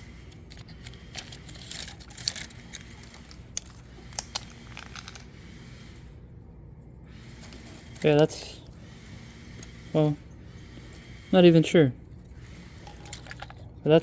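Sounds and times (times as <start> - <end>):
plastic parts clicking and rattling: 0.0 - 5.4, 12.4 - 14.0.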